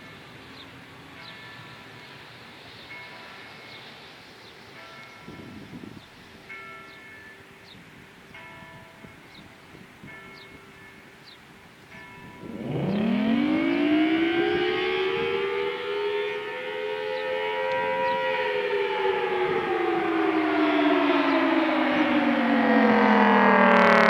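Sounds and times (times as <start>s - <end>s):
civil defense siren winding: 12.2s - 24.0s.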